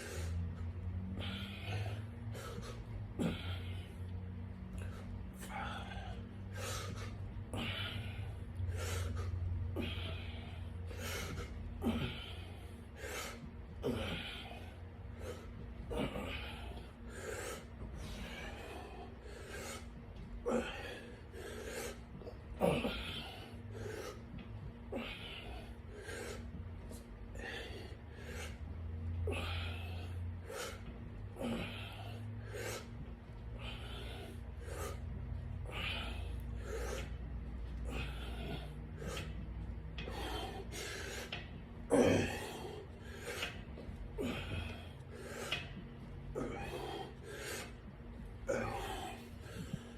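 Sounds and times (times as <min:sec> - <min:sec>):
person breathing hard: 0:00.0 - 0:49.9.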